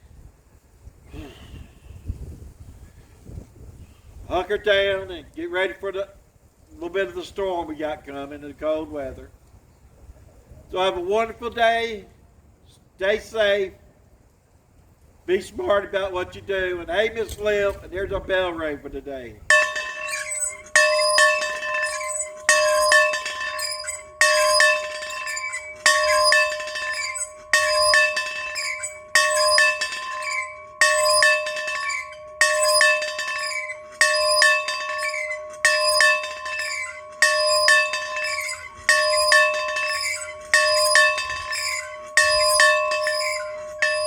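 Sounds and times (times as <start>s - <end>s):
bell ringing: 19.5s - 44.0s
small clinks: 19.5s - 44.0s.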